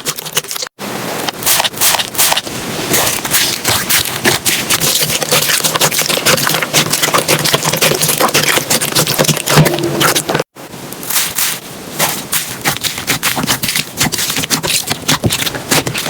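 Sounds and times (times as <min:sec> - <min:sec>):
slime crackling and squelching: 0:01.4 - 0:16.0.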